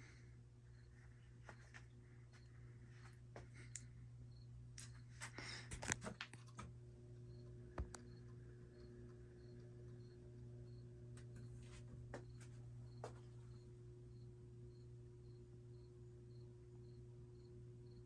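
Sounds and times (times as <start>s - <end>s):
ceiling fan motor hum: 0.0s - 18.0s
small clicks and rustles: 4.8s - 6.8s.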